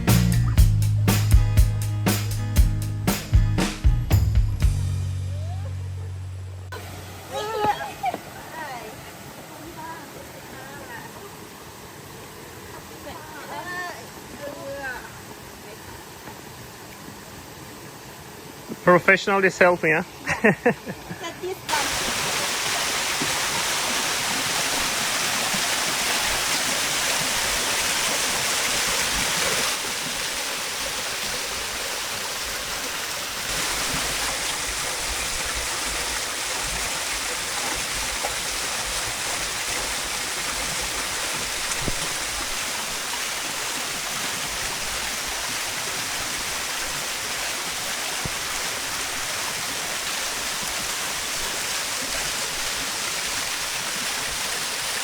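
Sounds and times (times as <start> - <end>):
rushing water: 6.7 - 55.0.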